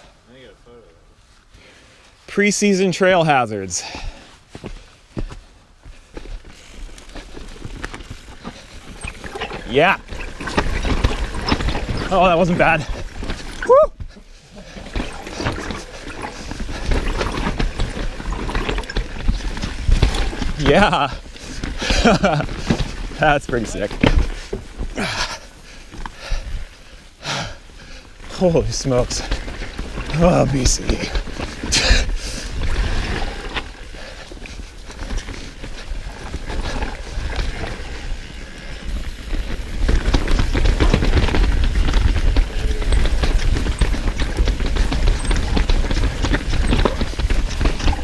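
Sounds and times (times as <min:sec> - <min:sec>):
mountain bike clattering over rocks: 0:05.2 - 0:48.0
wind rumbling on microphone: 0:28.6 - 0:48.0.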